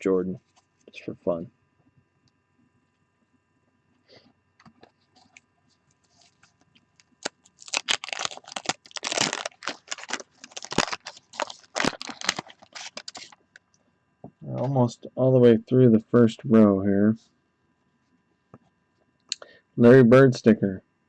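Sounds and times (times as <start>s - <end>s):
wax-paper wrapper tearing and crinkling: 6.1s - 13.6s.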